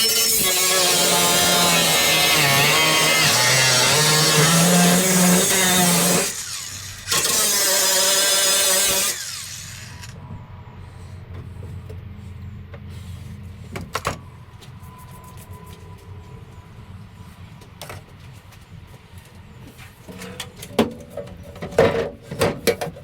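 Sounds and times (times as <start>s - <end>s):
power tool running: 0.0s - 10.2s
low hum: 9.1s - 17.8s.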